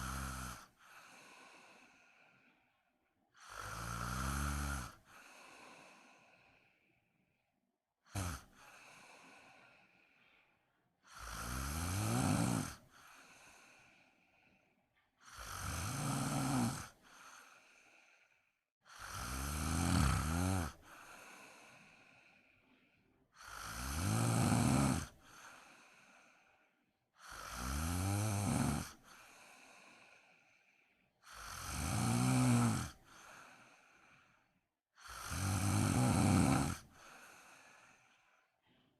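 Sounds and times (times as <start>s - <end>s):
woman snoring: 0.0s - 2.3s, 3.4s - 6.7s, 8.0s - 10.1s, 11.0s - 14.3s, 15.2s - 22.4s, 23.4s - 26.6s, 27.2s - 30.6s, 31.2s - 38.6s.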